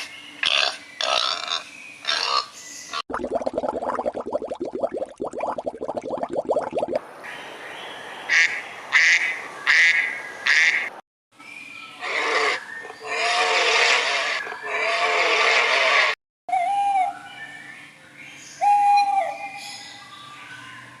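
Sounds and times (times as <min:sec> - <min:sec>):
harsh animal calls: 0:12.0 - 0:16.2
longer noisy animal calls: 0:12.0 - 0:16.2.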